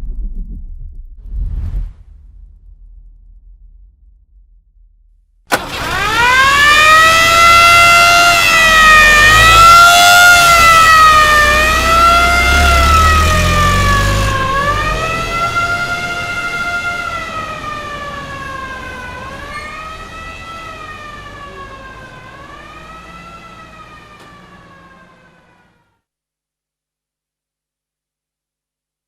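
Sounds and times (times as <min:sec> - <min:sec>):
vehicle engine rumble: 0:02.4 - 0:25.9
police siren wailing: 0:05.5 - 0:25.9.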